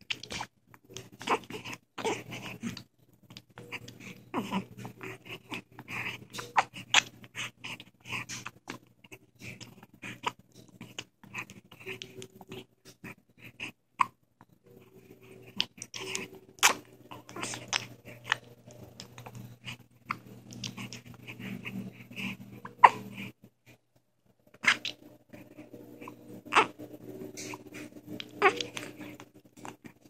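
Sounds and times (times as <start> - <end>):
faint low hum: 0.0 - 30.0
dog hiccupping: 15.6 - 23.3, 26.0 - 29.8.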